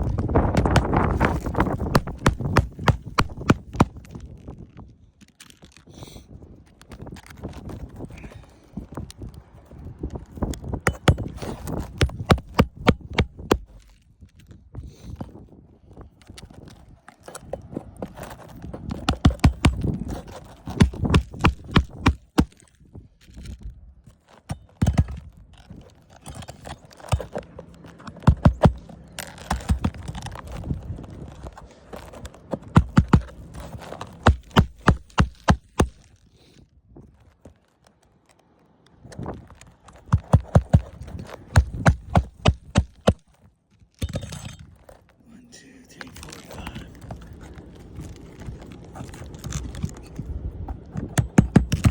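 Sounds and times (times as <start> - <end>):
hammer driving nails: 0.6 - 4.0, 10.9 - 13.9, 18.9 - 19.9, 20.6 - 22.6, 28.1 - 30.4, 32.6 - 36.1, 40.1 - 43.2, 51.0 - 51.9.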